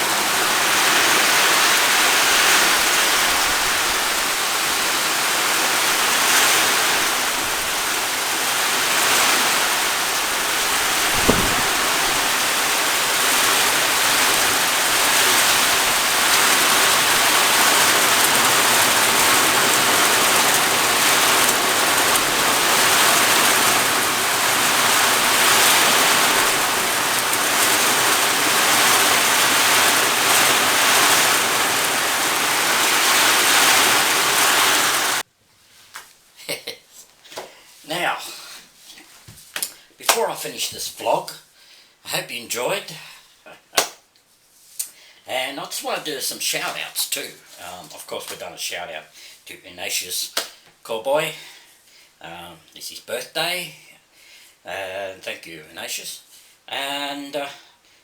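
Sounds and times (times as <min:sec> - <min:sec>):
heavy rain pouring: 0:00.0 - 0:35.2
short knock: 0:11.1 - 0:12.4.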